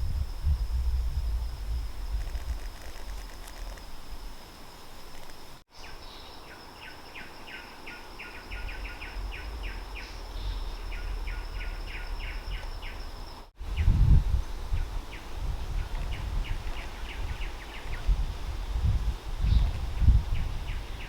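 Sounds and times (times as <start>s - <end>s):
wind rumble on microphone: 0.0s - 5.3s, 8.4s - 21.0s
high-pitched insect drone: 0.0s - 21.0s.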